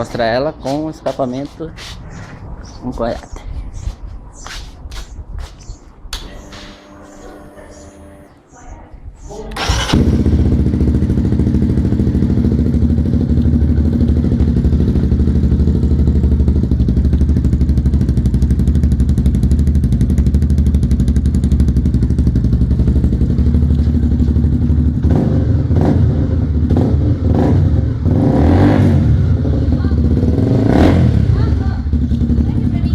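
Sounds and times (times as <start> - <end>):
motorcycle engine idling: 9.6 - 28.0, 29.6 - 32.9.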